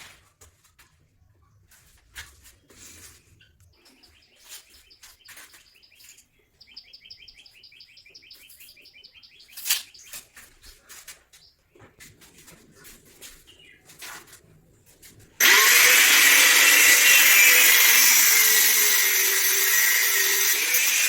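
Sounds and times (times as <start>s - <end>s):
bird chirping: 3.4s - 10.3s.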